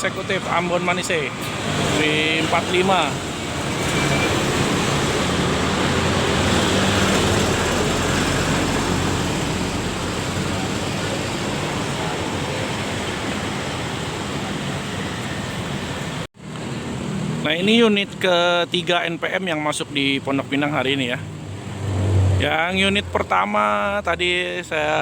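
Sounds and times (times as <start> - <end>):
bus diesel engine running: 0.0 - 17.6
heavy road traffic: 0.0 - 25.0.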